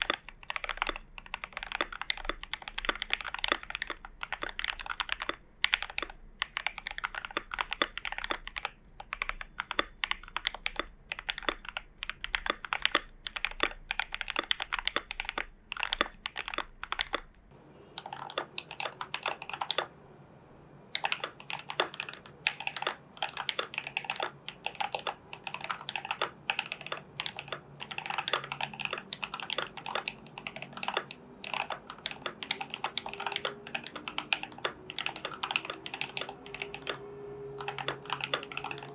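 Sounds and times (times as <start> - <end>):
mechanical keyboard key clacks: 0.0 - 17.2.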